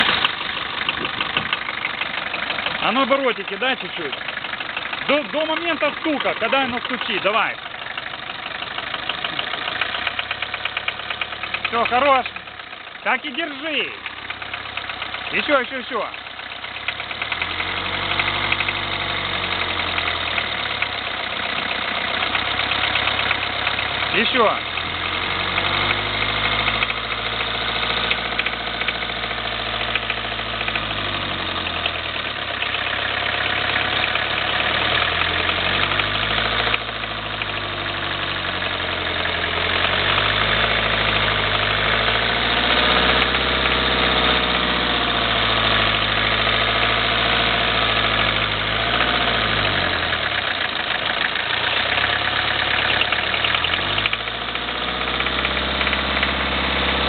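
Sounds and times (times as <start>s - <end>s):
diesel engine revving with knock: 0.0s - 57.0s.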